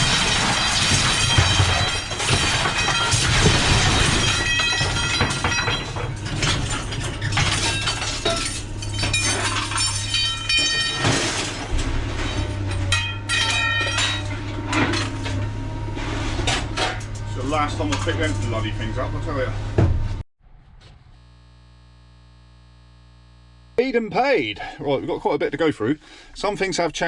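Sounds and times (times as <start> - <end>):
scrap steel clanging: 0.0 - 18.6.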